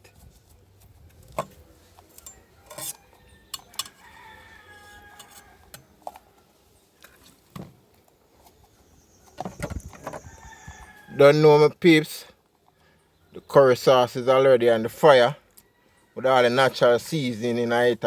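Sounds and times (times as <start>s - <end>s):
utensils and dishes clinking: 2.1s - 4.0s
rooster crowing: 2.2s - 5.8s, 10.2s - 11.2s, 15.6s - 16.2s.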